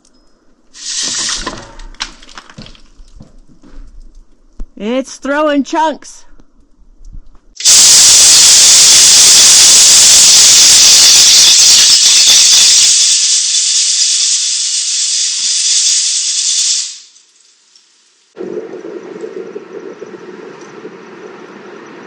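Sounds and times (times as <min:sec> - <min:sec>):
hiss of rushing air: 0:00.8 - 0:01.7, 0:07.6 - 0:18.3.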